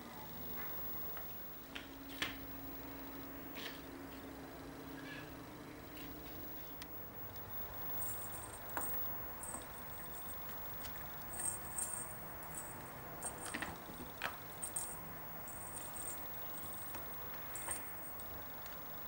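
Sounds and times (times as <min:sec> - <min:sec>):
light metallic jingling: 0:07.2 - 0:19.0.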